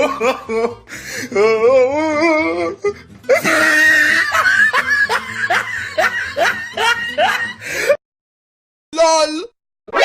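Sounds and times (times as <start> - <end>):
music backing: 0.0 - 7.9
rapid repeated laughter: 3.3 - 7.9.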